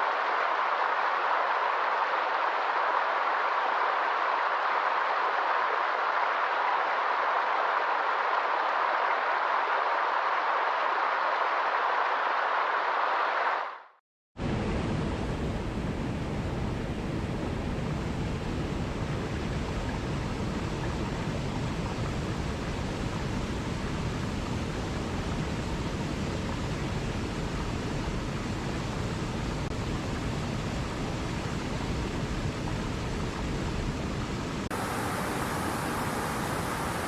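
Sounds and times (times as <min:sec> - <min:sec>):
running water rushing: 0:34.7 - 0:37.0.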